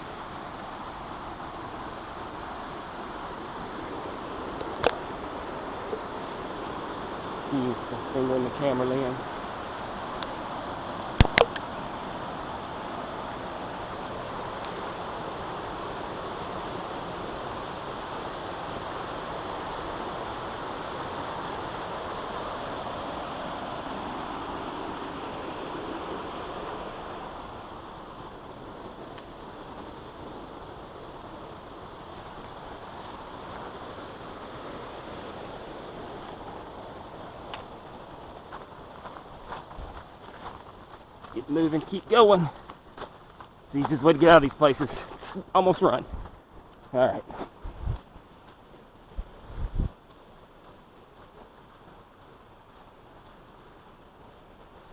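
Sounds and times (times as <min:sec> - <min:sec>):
waterfall rushing: 0:00.0 - 0:42.7, 0:43.7 - 0:46.0
sharp clicks: 0:11.2 - 0:11.6.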